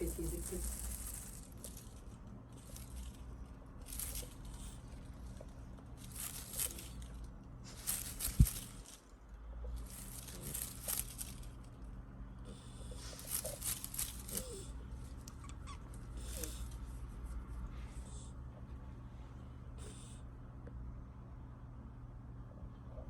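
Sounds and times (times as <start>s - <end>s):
rustling and crinkling: 0.0s - 18.8s.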